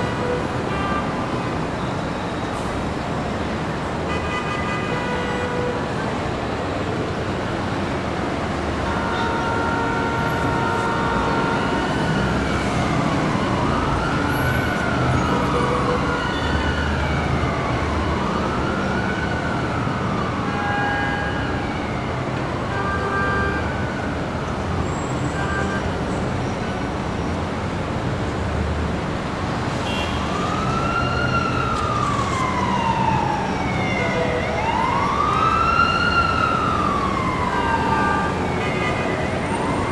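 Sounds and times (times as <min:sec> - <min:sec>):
city street traffic: 0:00.0 - 0:39.9
emergency vehicle siren wailing: 0:05.1 - 0:27.2, 0:28.9 - 0:39.9
car horn: 0:08.8 - 0:12.1, 0:29.8 - 0:30.3.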